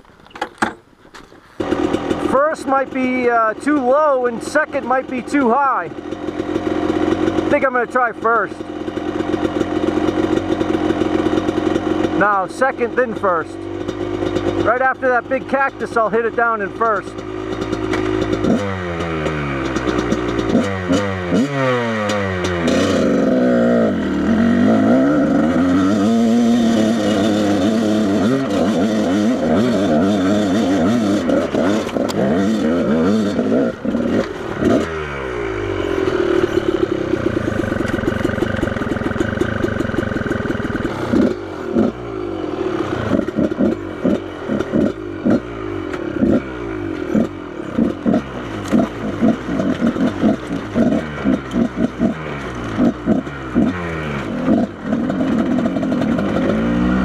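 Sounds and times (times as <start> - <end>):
motorcycle engine revving: 1.3 - 57.0.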